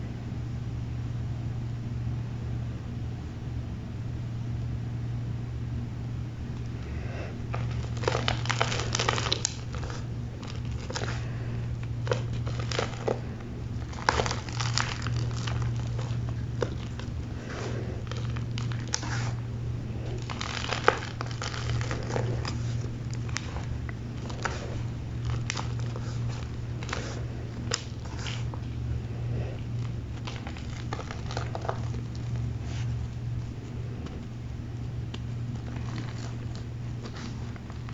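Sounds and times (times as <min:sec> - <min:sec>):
steady low hum: 0:00.0 - 0:37.9
chalk crushing and crunching: 0:06.9 - 0:37.9.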